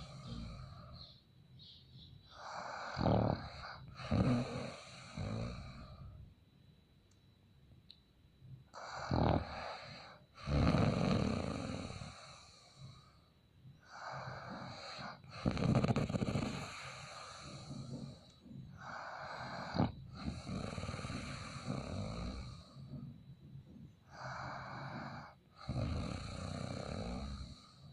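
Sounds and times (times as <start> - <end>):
man snoring: 0.0 - 1.0, 2.4 - 6.1, 8.8 - 12.8, 13.9 - 23.1, 24.1 - 27.9.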